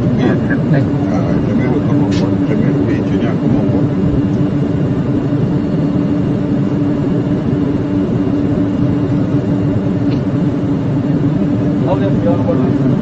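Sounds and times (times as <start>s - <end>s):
constant low hum: 0.0s - 13.0s
jet engines idling: 0.0s - 13.0s.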